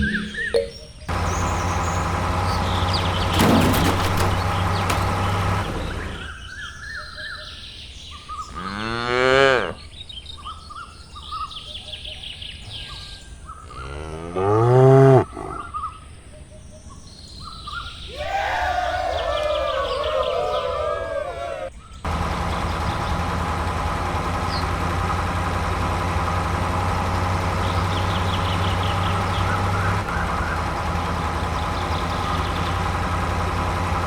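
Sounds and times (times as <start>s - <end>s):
steady droning: 0.0s - 6.3s, 21.5s - 34.0s
birds chirping faintly: 0.0s - 8.8s, 9.6s - 34.0s
cows mooing: 8.5s - 9.8s, 13.7s - 15.7s.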